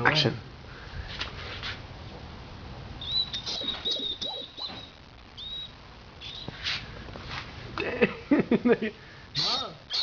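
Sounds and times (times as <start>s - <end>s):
rat squeaking: 3.0s - 6.7s, 9.4s - 10.0s.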